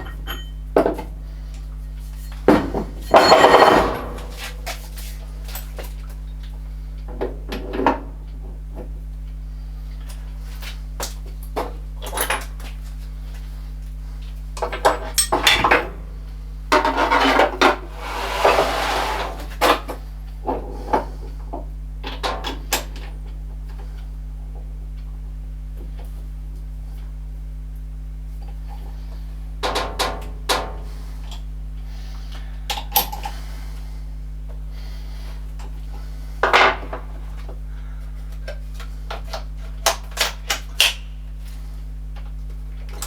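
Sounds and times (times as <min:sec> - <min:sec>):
metal tools clinking: 0:00.0 - 0:00.6, 0:03.0 - 0:04.5.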